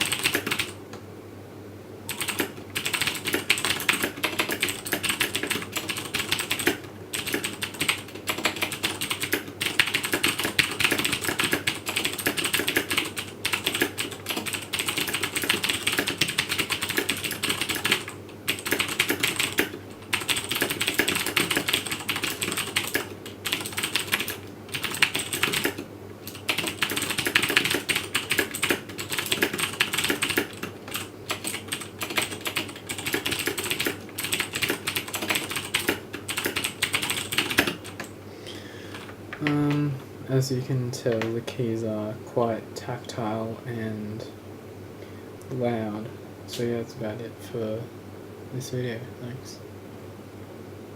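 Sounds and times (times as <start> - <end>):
mechanical keyboard typing: 0.0 - 0.8, 2.1 - 38.1.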